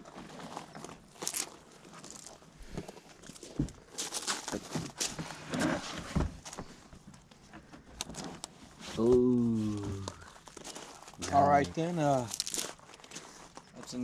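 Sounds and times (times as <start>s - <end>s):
carpet rustling and scraping: 2.0s - 9.2s.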